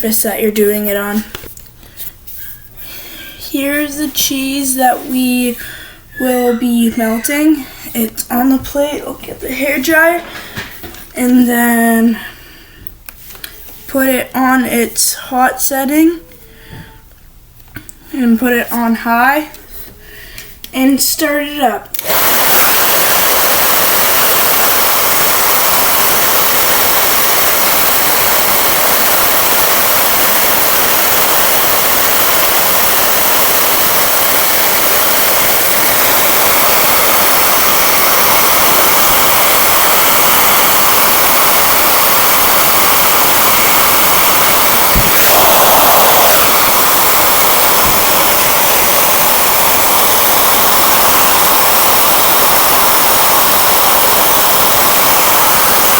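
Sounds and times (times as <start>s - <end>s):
hair dryer blowing air: 22.0s - 55.9s.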